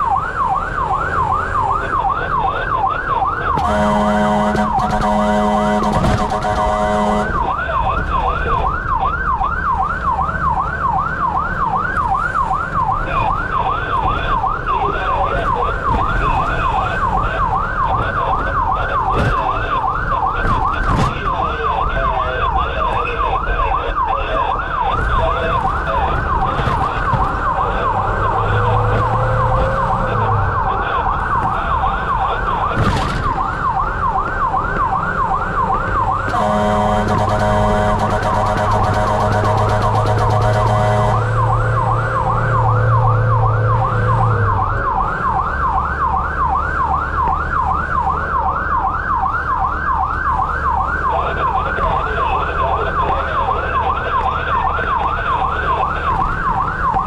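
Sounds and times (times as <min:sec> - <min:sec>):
siren on fast yelp: 0:00.0 - 0:57.0
steady horn tone: 0:03.6 - 0:07.6, 0:36.3 - 0:41.6.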